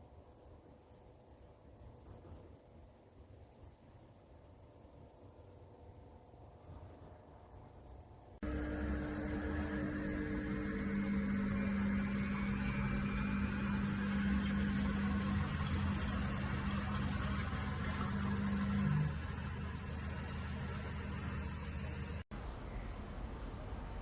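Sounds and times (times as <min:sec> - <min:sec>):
washing machine motor hum: 0:08.4 - 0:22.3.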